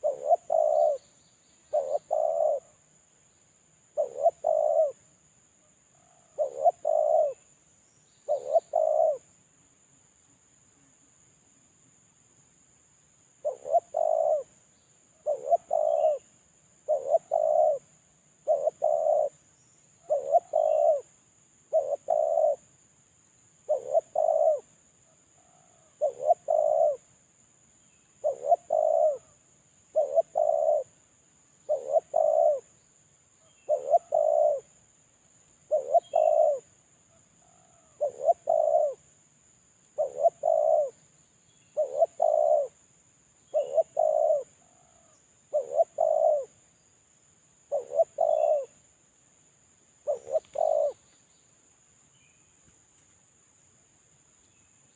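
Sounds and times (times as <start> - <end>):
dove cooing: 0.0 - 1.1, 1.7 - 2.8, 3.9 - 5.1, 5.9 - 7.5, 8.2 - 9.3, 13.4 - 14.6, 15.2 - 19.4, 20.0 - 21.1, 21.7 - 22.7, 23.6 - 24.8, 25.4 - 27.1, 28.2 - 31.0, 31.6 - 32.7, 33.4 - 34.8, 35.6 - 36.7, 37.4 - 39.0, 39.9 - 41.0, 41.7 - 42.8, 43.5 - 46.6, 47.7 - 48.8, 50.0 - 51.0.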